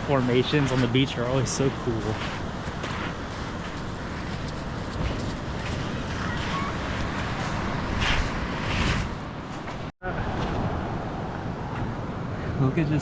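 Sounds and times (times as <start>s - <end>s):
wind buffeting microphone: 0.0s - 12.6s
surf rushing: 0.0s - 13.0s.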